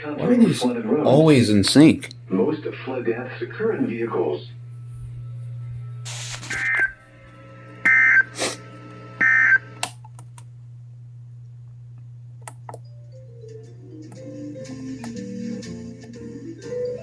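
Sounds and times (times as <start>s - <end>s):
steady low hum: 0.0s - 14.9s
soft music: 12.8s - 17.0s.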